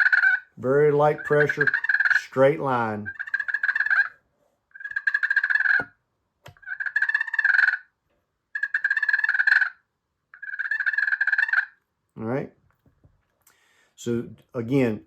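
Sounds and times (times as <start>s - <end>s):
friction turkey call purrs: 0.0s - 6.0s, 6.6s - 7.9s, 8.5s - 11.8s.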